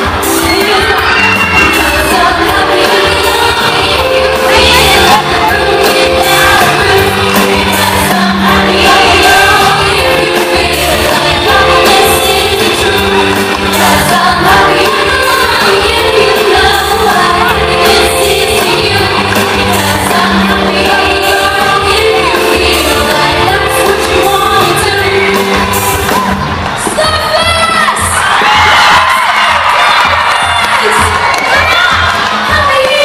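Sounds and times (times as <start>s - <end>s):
children singing: 0.0s - 26.5s
amplified backing track: 0.0s - 28.2s.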